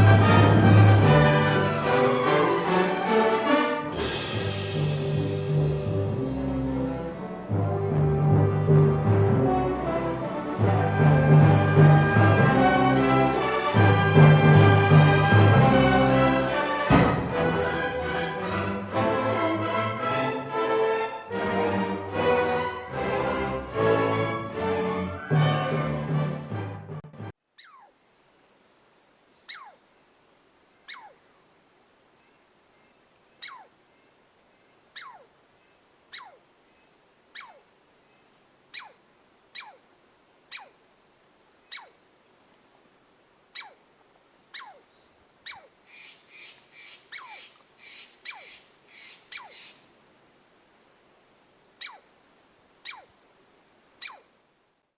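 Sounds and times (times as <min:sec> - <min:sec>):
animal calling sharply: 0:27.6 - 0:27.9, 0:29.5 - 0:29.8, 0:30.9 - 0:31.2, 0:33.4 - 0:33.7, 0:35.0 - 0:35.3, 0:36.1 - 0:36.4, 0:37.4 - 0:37.6, 0:38.8 - 0:39.0, 0:39.6 - 0:39.8, 0:40.5 - 0:40.8, 0:41.7 - 0:42.0, 0:43.6 - 0:43.8, 0:44.5 - 0:44.8, 0:45.4 - 0:49.7, 0:51.8 - 0:52.1, 0:52.8 - 0:53.1, 0:54.0 - 0:54.3
animal chattering: 0:27.6 - 0:27.9, 0:29.5 - 0:29.8, 0:30.9 - 0:31.2, 0:33.4 - 0:33.7, 0:35.0 - 0:35.3, 0:36.1 - 0:36.4, 0:37.4 - 0:37.6, 0:38.7 - 0:39.0, 0:39.6 - 0:39.8, 0:40.5 - 0:40.8, 0:41.7 - 0:42.0, 0:43.6 - 0:43.8, 0:44.5 - 0:44.8, 0:45.4 - 0:49.7, 0:51.8 - 0:52.1, 0:52.8 - 0:53.1, 0:54.0 - 0:54.3.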